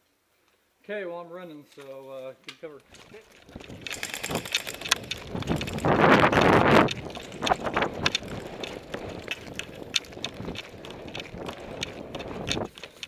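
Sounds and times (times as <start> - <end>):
gear clattering: 2.8 - 13.0
running footsteps: 2.8 - 13.0
wind buffeting microphone: 3.0 - 12.8.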